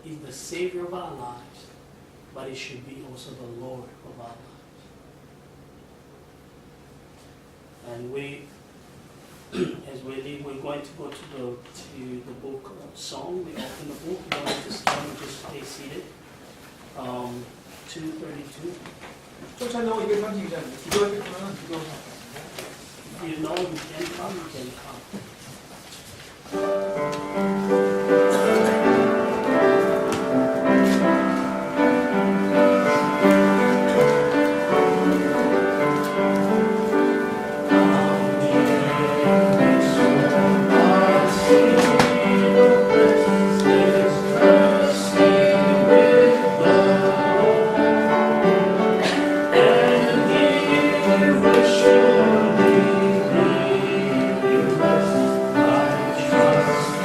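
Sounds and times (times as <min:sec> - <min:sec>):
piano accompaniment: 0:26.4 - 0:57.0
congregation singing a hymn: 0:26.6 - 0:57.0.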